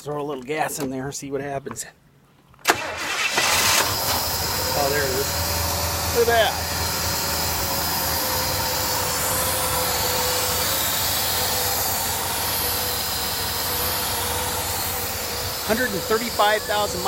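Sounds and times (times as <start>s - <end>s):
car engine running: 3.1s - 17.0s
high whine: 3.8s - 17.0s.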